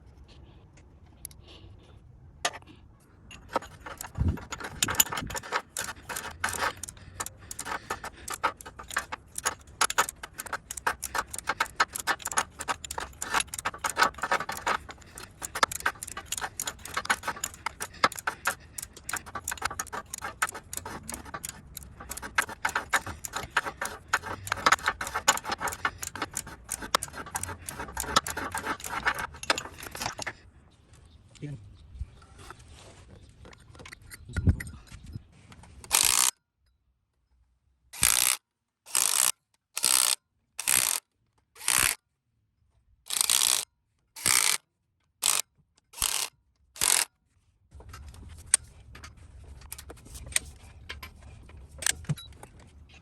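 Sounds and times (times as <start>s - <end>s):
hand tools clicking and clinking: 3.2s - 30.4s.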